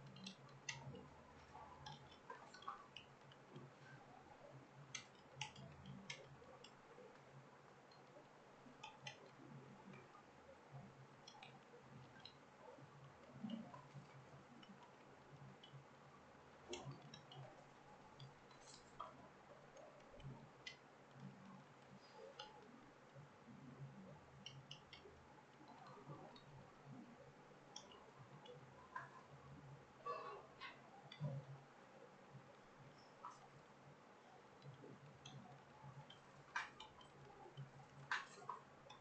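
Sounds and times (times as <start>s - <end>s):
keyboard typing clicks: 0.0s - 3.7s
faint low hum: 0.0s - 39.0s.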